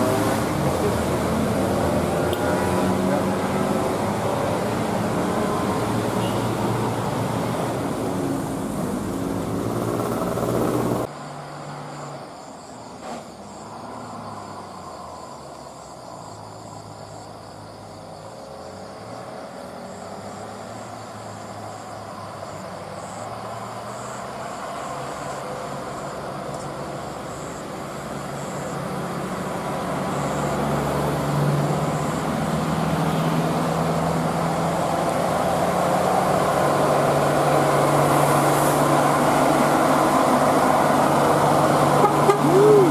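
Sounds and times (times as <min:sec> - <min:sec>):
bus engine running: 0:00.0 - 0:11.1, 0:25.7 - 0:42.9.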